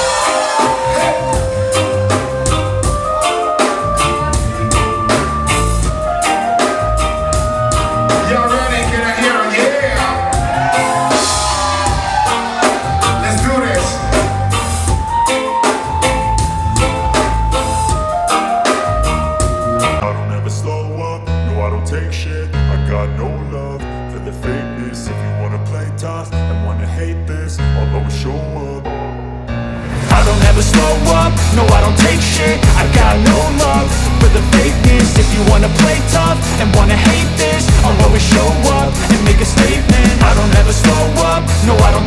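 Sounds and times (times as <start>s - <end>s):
melody of long held notes: 0.0s - 9.2s, 9.9s - 20.0s
drum kit beat: 0.0s - 20.0s, 30.1s - 42.0s.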